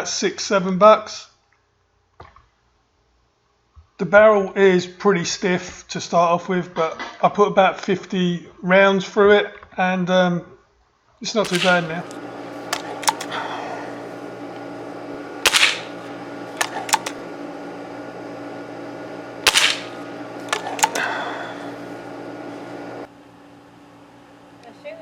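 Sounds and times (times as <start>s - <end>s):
air rifle firing: 11.4s - 13.6s, 15.4s - 17.2s, 19.4s - 21.8s
sharp metallic clicks: 11.4s - 14.6s, 15.4s - 17.3s, 19.4s - 21.9s
steady hum: 11.4s - 25.0s.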